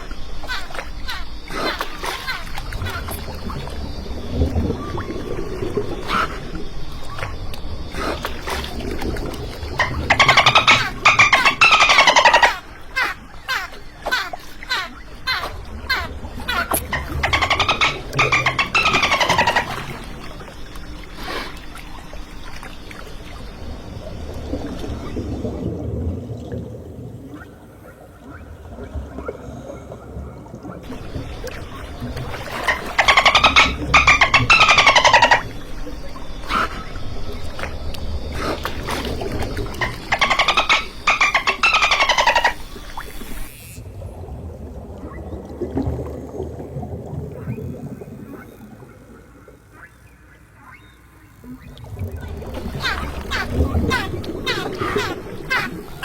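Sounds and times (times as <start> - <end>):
water noise: 0.0 - 56.0
dolphin buzzing clicks: 9.4 - 20.3, 37.5 - 44.0, 52.6 - 56.0
low underwater rumble: 21.8 - 34.7.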